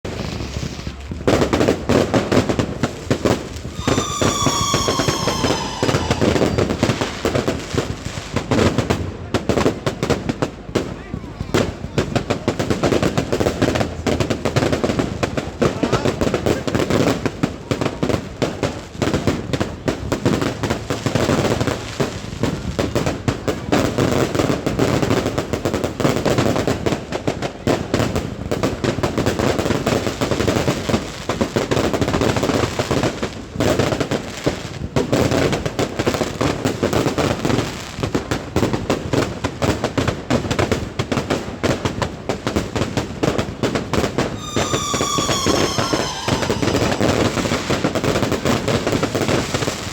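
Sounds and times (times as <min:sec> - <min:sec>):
fireworks bangs and crackles: 0:00.1 - 0:49.9
falling firework whistle: 0:03.3 - 0:07.9, 0:44.1 - 0:49.6.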